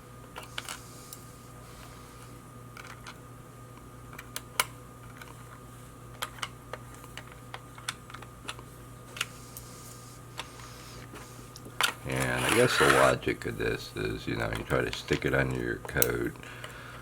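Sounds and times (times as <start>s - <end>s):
faint electrical hum: 0.0s - 17.0s.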